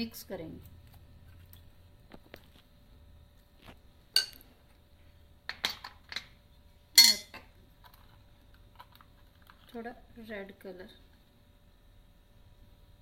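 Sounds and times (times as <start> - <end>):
utensils clinking against bowl: 4.2 - 4.4, 7.0 - 7.5.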